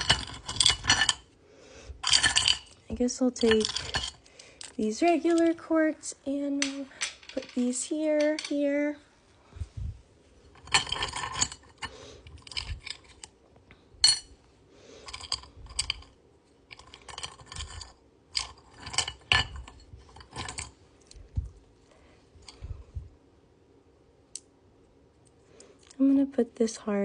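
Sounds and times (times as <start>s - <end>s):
crystals clinking: 0.0s - 1.2s, 2.0s - 5.5s, 6.6s - 8.7s, 10.5s - 13.3s, 14.0s - 14.3s, 15.0s - 20.7s.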